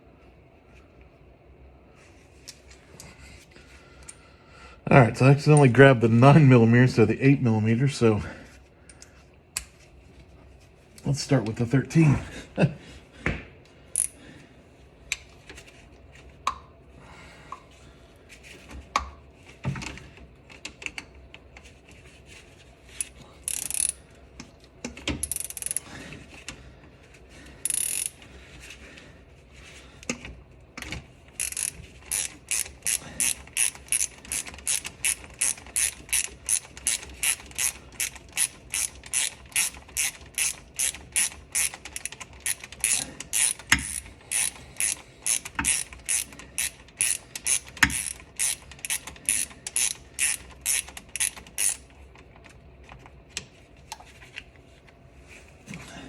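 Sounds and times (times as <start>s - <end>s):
socket ratchet clicking: 14.0s - 14.2s, 23.5s - 24.0s, 25.2s - 25.8s, 27.7s - 28.2s, 31.4s - 51.9s.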